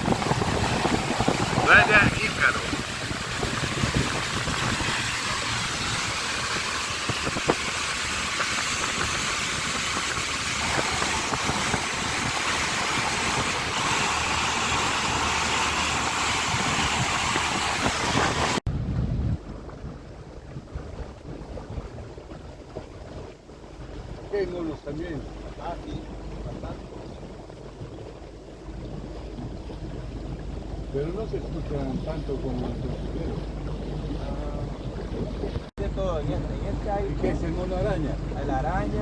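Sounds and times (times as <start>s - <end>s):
motorboat engine: 0.0s - 39.0s
water noise: 0.0s - 39.0s
wind buffeting microphone: 0.0s - 39.0s.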